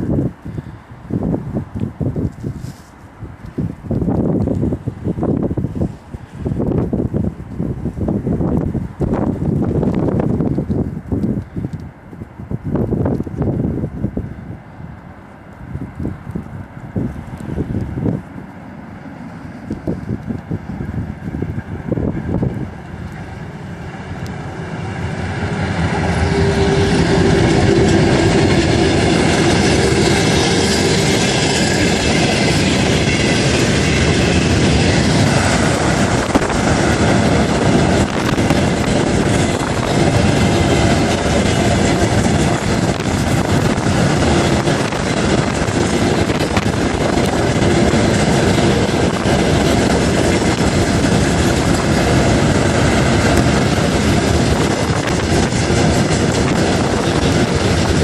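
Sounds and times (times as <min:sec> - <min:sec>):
train rumbling over bridge: 0:00.0 - 0:58.0
wheels clattering over rail joints: 0:25.9 - 0:58.0.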